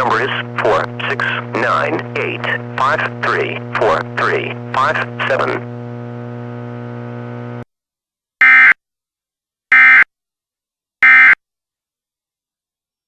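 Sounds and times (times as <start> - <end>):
steady hum: 0.0 - 7.6.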